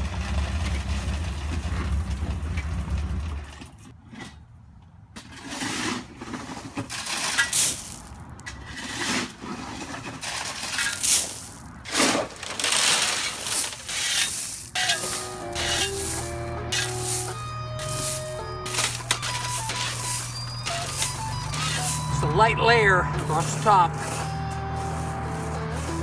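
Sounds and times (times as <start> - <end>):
low engine hum: 0.0 - 3.9, 15.1 - 26.0
gravel crunching and scraping: 0.0 - 26.0.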